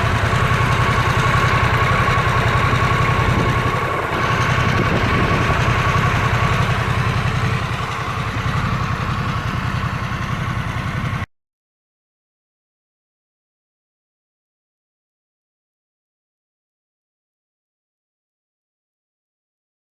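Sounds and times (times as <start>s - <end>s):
motorcycle engine idling: 0.0s - 11.3s.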